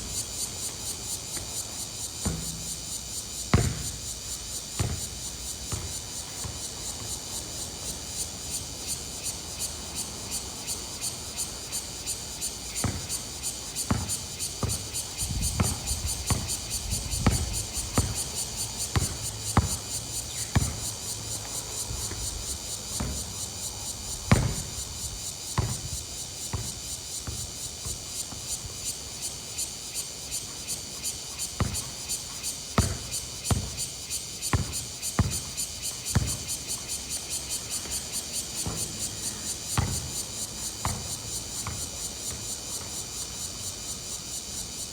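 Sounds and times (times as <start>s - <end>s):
insects chirring: 0.0s - 44.9s
ball bouncing on a court: 2.2s - 4.0s, 4.8s - 6.6s, 12.8s - 13.1s, 13.9s - 14.8s, 15.4s - 16.5s, 17.2s - 18.2s, 19.0s - 19.8s, 20.5s - 20.8s, 24.3s - 24.7s, 25.6s - 25.8s, 31.6s - 31.9s, 32.8s - 33.7s, 34.5s - 35.5s, 36.1s - 36.4s, 39.8s - 40.1s, 40.8s - 42.4s.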